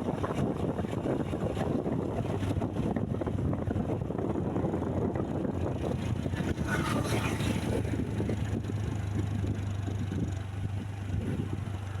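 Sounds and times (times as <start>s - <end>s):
wind buffeting microphone: 0.0s - 12.0s
heavy vehicle engine droning: 0.4s - 12.0s.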